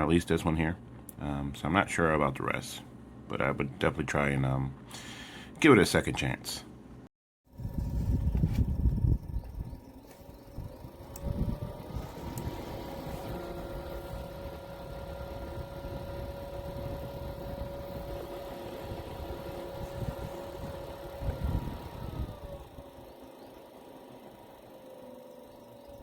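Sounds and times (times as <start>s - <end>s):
desk fan motor whine: 7.5s - 26.0s.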